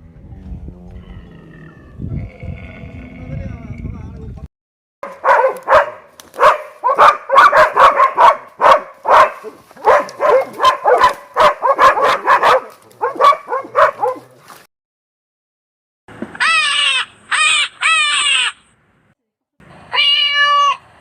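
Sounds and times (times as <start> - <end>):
dog barking rapidly: 5.0 - 14.3.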